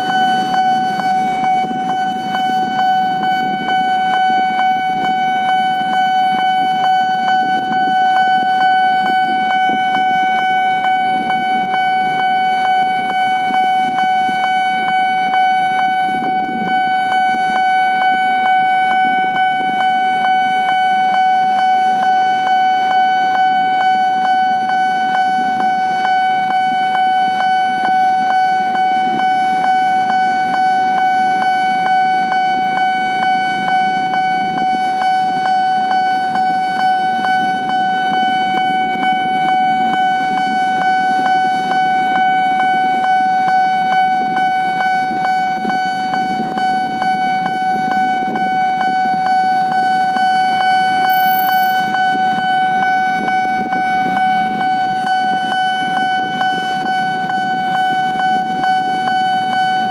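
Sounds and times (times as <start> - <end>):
level-crossing warning alarm: 0.0 - 59.9.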